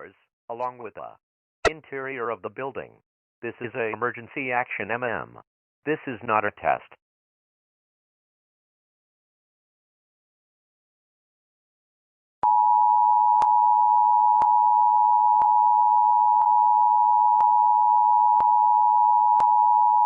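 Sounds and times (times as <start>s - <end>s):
two-tone alarm: 12.4s - 20.0s
clicks: 13.4s - 13.6s, 14.3s - 14.6s, 15.3s - 15.7s, 16.3s - 18.7s, 19.3s - 19.7s.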